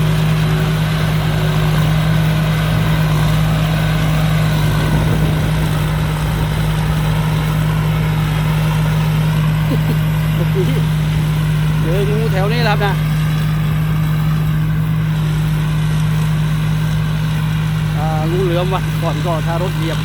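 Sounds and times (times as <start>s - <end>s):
diesel engine droning under load: 0.0s - 20.0s.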